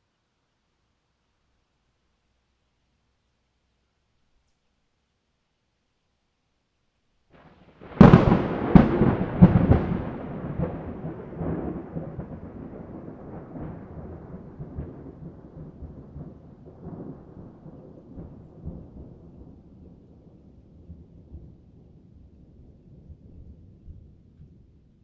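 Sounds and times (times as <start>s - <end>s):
rolling thunder rumble: 7.4s - 25.0s
thunder cracks: 7.8s - 20.1s.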